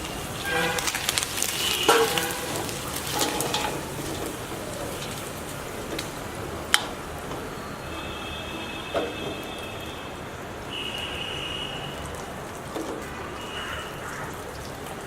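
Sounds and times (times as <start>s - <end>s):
chicken sizzling in a pan: 0.0s - 6.5s.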